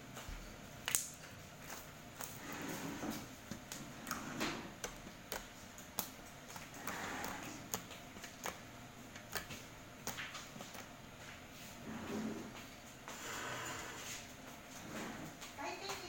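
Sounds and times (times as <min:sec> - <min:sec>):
slime squishing: 0:00.7 - 0:12.6
slime clicking and popping: 0:00.8 - 0:02.4, 0:04.8 - 0:10.9.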